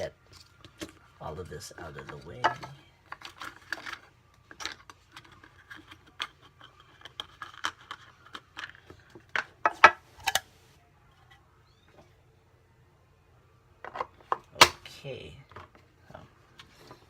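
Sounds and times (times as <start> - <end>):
plastic items clicking and tapping: 1.6 - 10.4.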